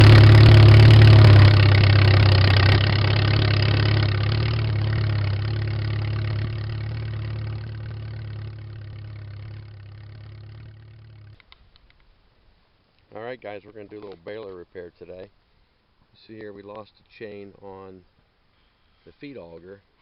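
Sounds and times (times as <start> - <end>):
tractor engine idling: 0.0 - 11.4.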